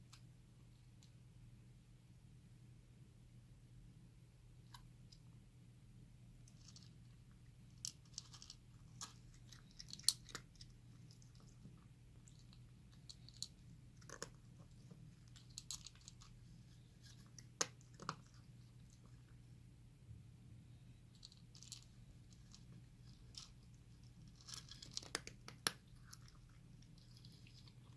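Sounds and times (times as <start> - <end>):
cat chewing crunchy food: 6.4 - 19.5, 21.1 - 27.9.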